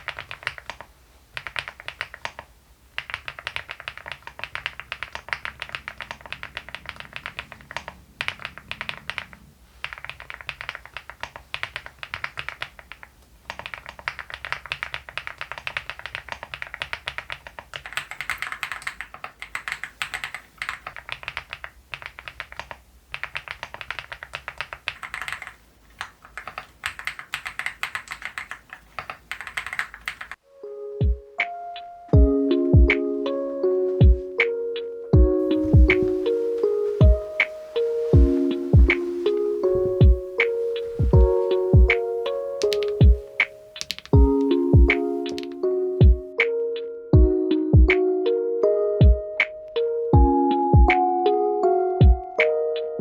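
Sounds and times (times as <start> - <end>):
mechanical keyboard typing: 0.0 - 30.4, 35.4 - 45.6.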